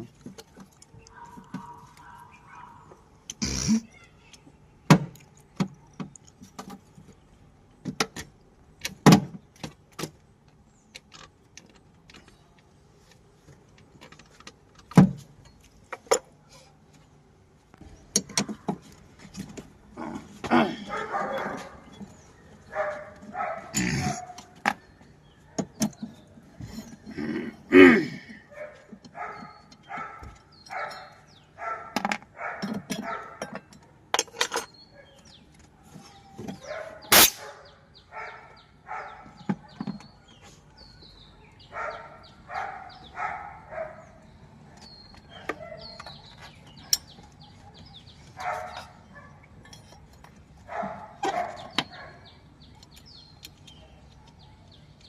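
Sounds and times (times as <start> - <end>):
dog barking: 1.1 - 3.0, 20.6 - 21.9, 22.7 - 24.4, 28.6 - 33.4, 36.6 - 39.8, 41.7 - 44.2, 48.4 - 49.4, 50.7 - 52.3.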